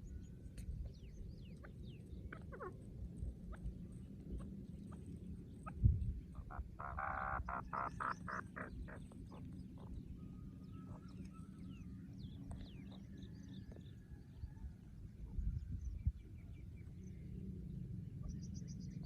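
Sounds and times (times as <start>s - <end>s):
small birds chirping: 0.0s - 14.6s, 15.3s - 19.0s
francolin calling: 6.4s - 9.0s.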